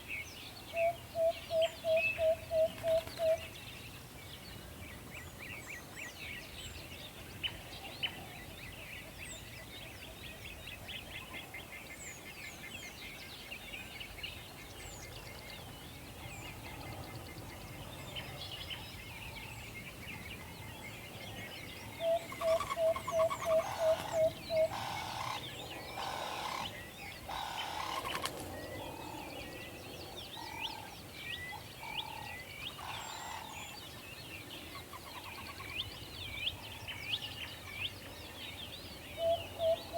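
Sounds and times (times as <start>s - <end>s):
small birds chirping: 14.8s - 39.9s
owl hooting: 22.0s - 25.4s.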